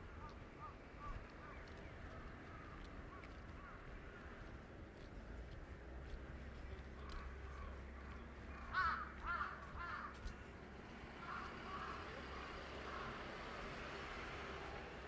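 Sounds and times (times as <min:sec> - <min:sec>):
crow cawing: 0:08.6 - 0:10.3, 0:11.2 - 0:13.2.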